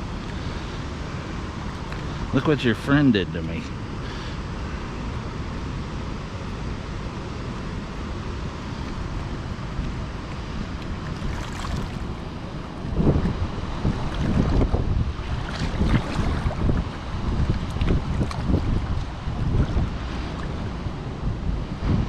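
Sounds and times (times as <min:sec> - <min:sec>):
spillway water rushing: 0:00.0 - 0:22.0
wind buffeting microphone: 0:04.8 - 0:22.0.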